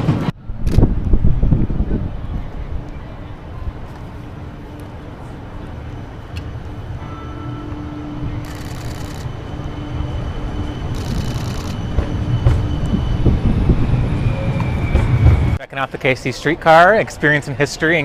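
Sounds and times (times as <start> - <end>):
tram rumbling: 0.0 - 16.7
faint steady whine: 2.2 - 11.9.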